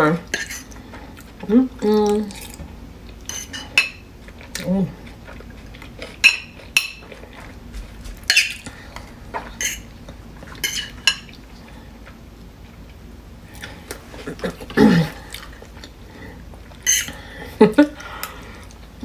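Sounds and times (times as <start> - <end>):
utensils clinking on pots and dishes: 0.3 - 0.8, 3.3 - 4.0, 6.2 - 7.1, 8.2 - 8.8, 9.5 - 9.9, 10.6 - 11.3, 16.9 - 17.2.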